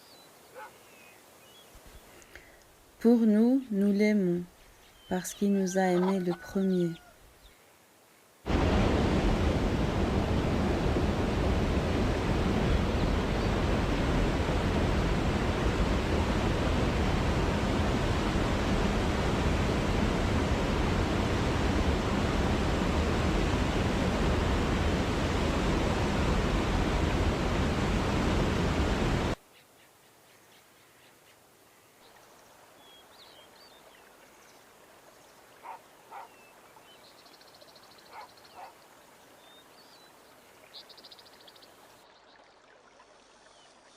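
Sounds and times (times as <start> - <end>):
faint bird chirps: 4.4 - 7.8
rushing water: 8.4 - 29.4, 31.4 - 43.9.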